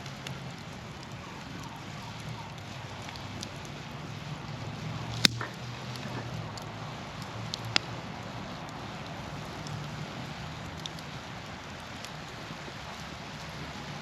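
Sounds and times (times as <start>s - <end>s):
burning wood popping: 0.0s - 14.0s
campfire burning: 0.0s - 14.0s.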